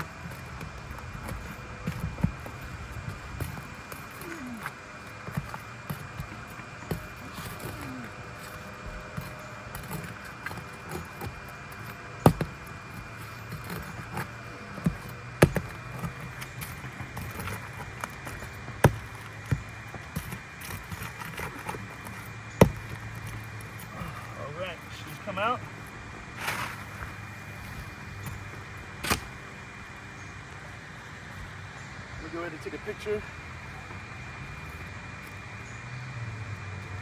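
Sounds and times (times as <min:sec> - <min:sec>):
light clicks and scrapes: 0:00.0 - 0:29.3
steady low hum: 0:00.0 - 0:37.0.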